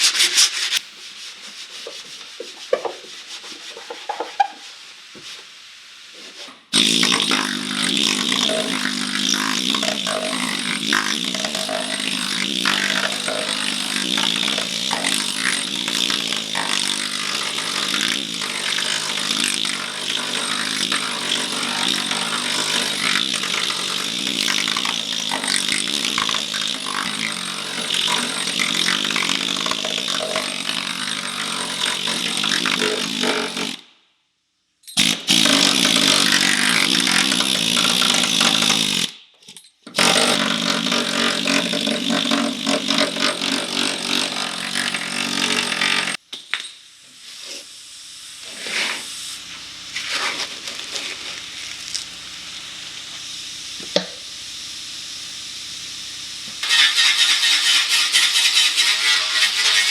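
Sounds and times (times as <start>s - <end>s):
power tool grinding sheet metal: 6.8s - 33.8s, 35.0s - 39.1s, 40.0s - 46.2s, 56.6s - 59.9s.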